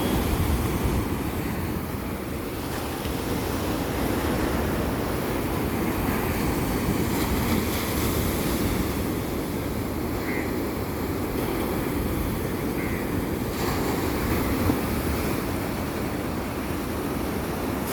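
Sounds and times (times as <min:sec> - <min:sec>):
wind buffeting microphone: 0:00.0 - 0:10.1
sea waves washing: 0:00.0 - 0:17.9.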